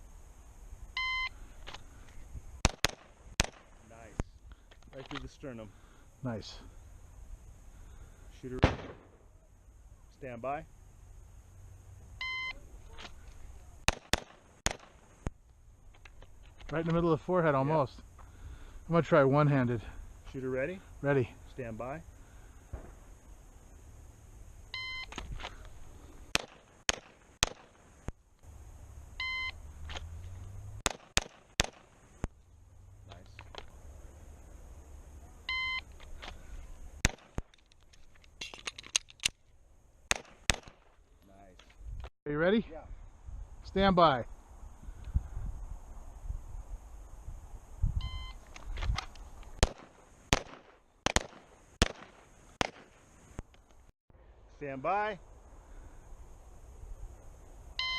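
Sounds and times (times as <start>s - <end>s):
pistol shots: 2.6s - 3.7s, 8.6s - 9.2s, 13.9s - 15.0s, 26.3s - 27.8s, 30.8s - 31.9s, 37.0s - 37.4s, 40.1s - 40.8s, 49.6s - 53.0s.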